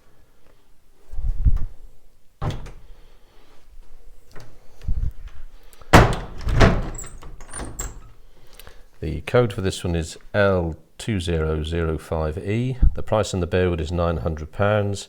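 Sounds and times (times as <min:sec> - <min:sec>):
wardrobe door clunk and rattle: 0:02.4 - 0:03.0, 0:05.9 - 0:08.1
wooden wardrobe doors knocking: 0:02.4 - 0:03.0, 0:05.9 - 0:08.0.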